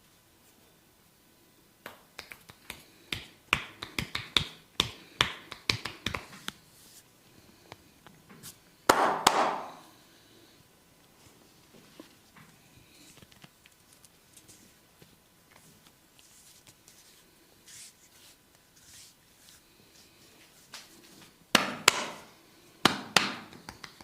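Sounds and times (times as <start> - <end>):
hands tapping on a head: 1.8 - 6.6, 8.9 - 9.8, 21.6 - 22.2, 22.8 - 24.0
loud hand smacks: 8.9 - 9.8.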